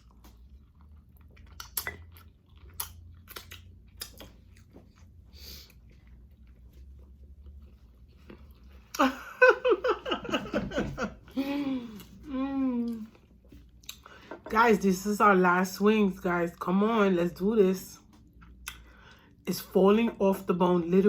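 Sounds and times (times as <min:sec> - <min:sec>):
close-up chewing: 0:00.0 - 0:09.0, 0:18.1 - 0:19.3
wet mouth smacking: 0:01.4 - 0:04.7.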